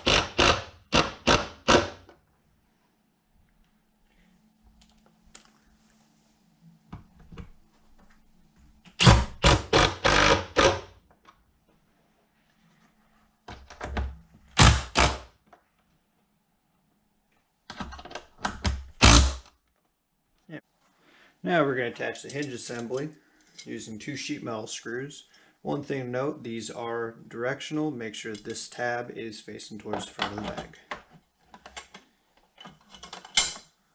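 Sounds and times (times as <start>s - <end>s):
faint steady hum: 0.0s - 33.9s
tools knocking and clattering: 29.9s - 33.7s.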